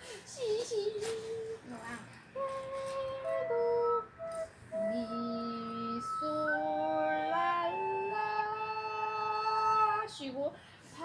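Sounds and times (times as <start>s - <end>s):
recorder playing slow melody: 2.4s - 9.9s.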